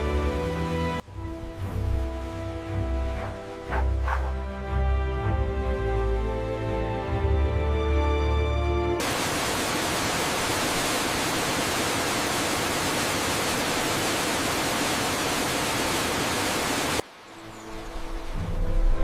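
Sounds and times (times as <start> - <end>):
music: 0.0 - 9.0, 17.4 - 19.0
waterfall rushing: 9.0 - 18.4.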